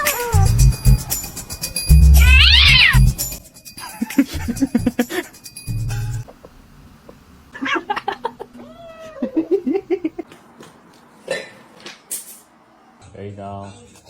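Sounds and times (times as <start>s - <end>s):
cat calling: 0.0s - 0.6s, 2.2s - 3.2s, 7.6s - 7.9s, 8.6s - 9.5s.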